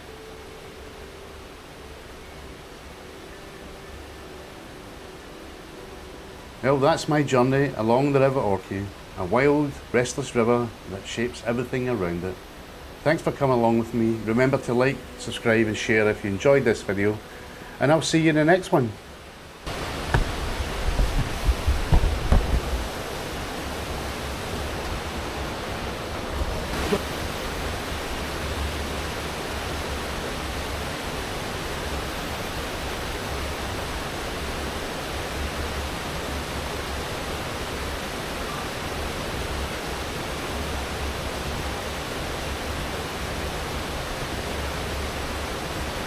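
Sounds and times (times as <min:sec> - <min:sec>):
river water rushing: 0:00.0 - 0:46.0.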